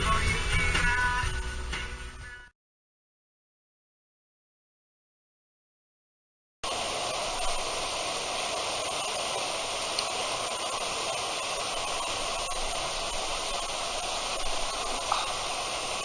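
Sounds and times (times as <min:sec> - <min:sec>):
outdoor background hiss: 0:06.7 - 0:16.0.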